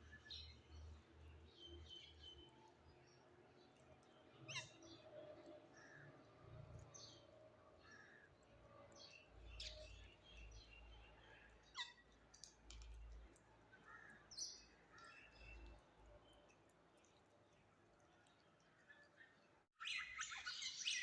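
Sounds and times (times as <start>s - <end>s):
faint bird chirps and calls: 4.0s - 6.1s, 9.0s - 12.2s, 13.7s - 21.0s.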